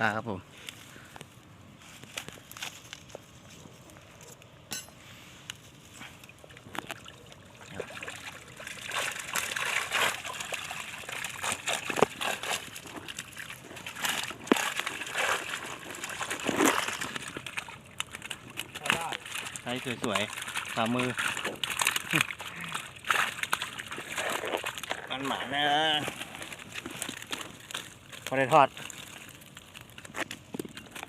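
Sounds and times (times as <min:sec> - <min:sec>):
fish splashing in water: 0:06.3 - 0:31.0.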